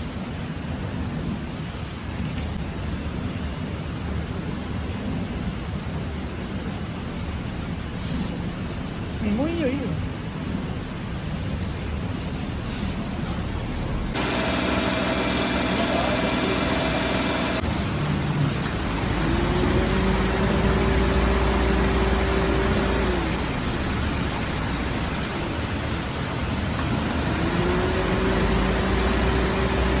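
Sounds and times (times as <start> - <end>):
car engine hum: 13.5 - 30.0
air conditioner buzzing: 14.1 - 30.0.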